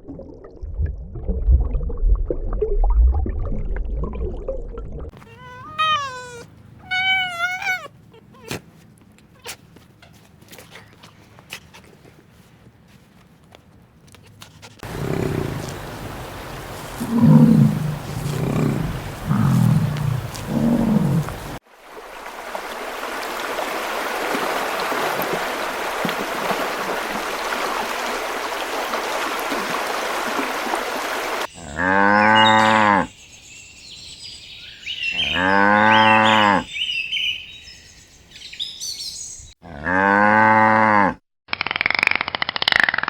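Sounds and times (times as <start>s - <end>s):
cow mooing: 14.8s - 21.6s, 31.6s - 33.1s, 35.2s - 36.7s, 39.6s - 41.2s.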